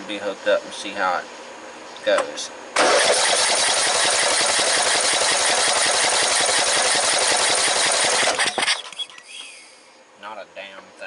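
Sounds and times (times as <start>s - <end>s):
engine cranking on starter: 2.8s - 8.9s.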